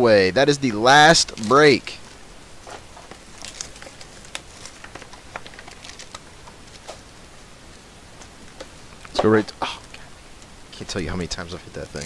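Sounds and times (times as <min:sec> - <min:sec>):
card packs clicking and rustling: 0:01.1 - 0:01.8, 0:02.6 - 0:07.1, 0:11.6 - 0:12.0.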